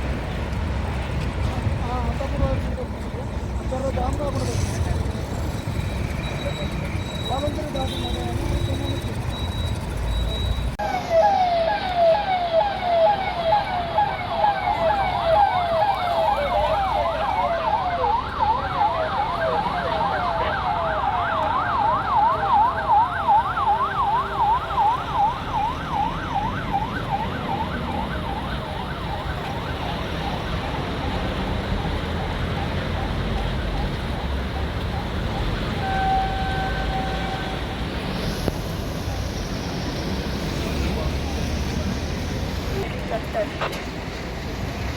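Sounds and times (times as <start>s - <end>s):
electronic siren yelping: 8.6s - 37.6s.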